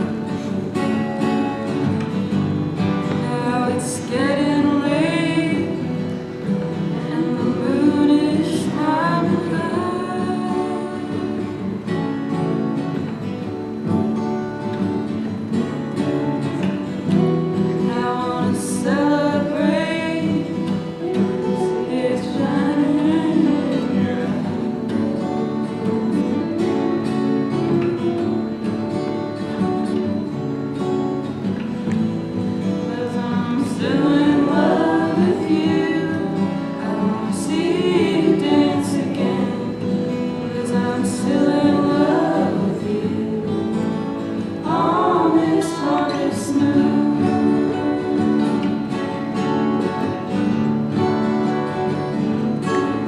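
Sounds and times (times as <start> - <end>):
strummed acoustic guitar: 0.0 - 53.0
person singing: 3.1 - 6.2, 6.8 - 11.8, 17.8 - 29.2, 32.8 - 49.2.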